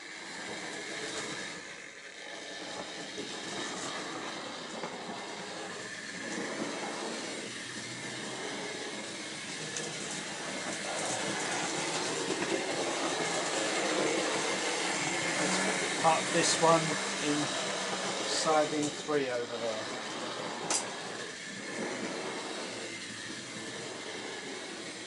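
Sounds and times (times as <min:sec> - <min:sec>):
model train motor whirring: 0:00.0 - 0:25.0
wheels clicking on rails: 0:00.2 - 0:25.0.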